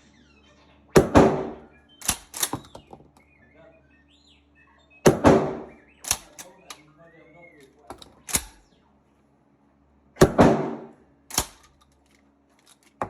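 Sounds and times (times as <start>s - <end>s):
faint bird chirp: 0.0s - 9.3s
shotgun shots: 1.0s - 2.8s, 5.0s - 6.8s, 8.0s - 8.7s, 10.2s - 11.8s.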